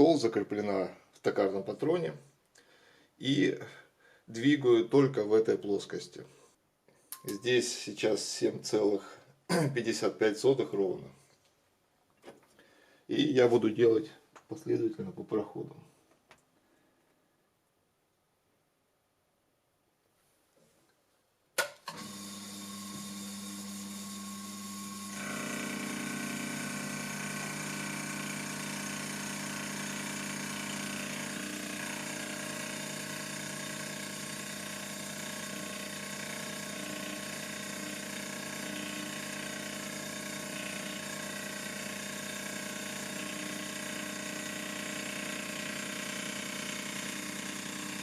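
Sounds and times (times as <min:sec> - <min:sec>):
milling machine motor humming: 0:22.0 - 0:48.0.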